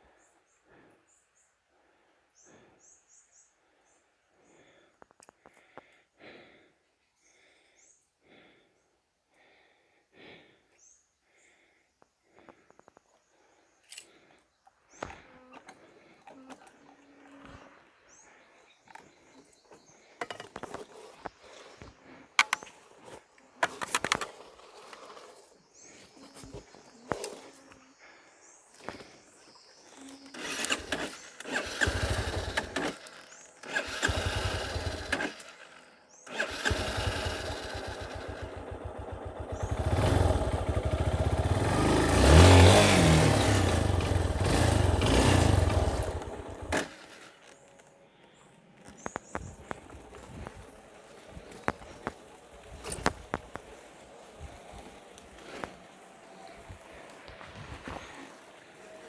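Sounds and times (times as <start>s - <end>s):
small motorcycle engine revving: 18.9s - 28.2s, 29.8s - 47.9s, 48.8s - 59.0s.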